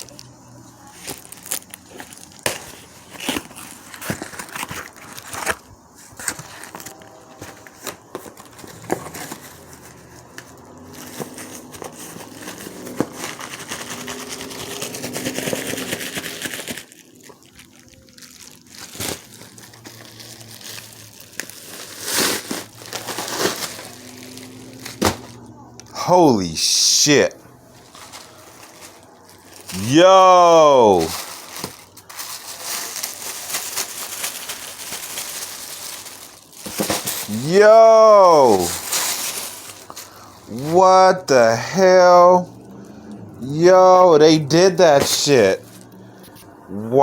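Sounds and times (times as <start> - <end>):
packaging crinkling and rustling: 0.0 - 26.0, 27.0 - 41.3.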